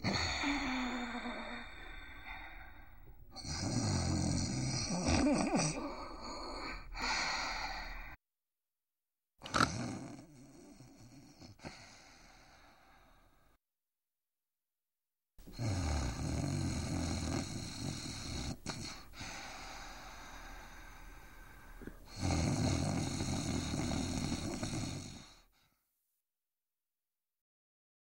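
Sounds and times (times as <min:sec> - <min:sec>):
man snoring: 0:00.0 - 0:08.2, 0:09.4 - 0:13.4, 0:15.4 - 0:25.5.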